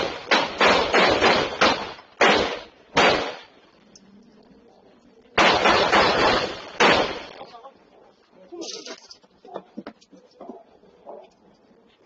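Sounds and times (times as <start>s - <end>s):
gunshots: 0.0s - 3.6s, 5.4s - 7.5s.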